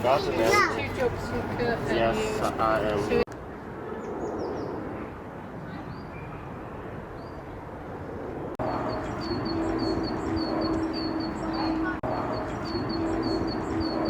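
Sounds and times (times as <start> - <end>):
outdoor background noise: 0.0 - 14.0
birds chirping rapidly: 8.6 - 14.0.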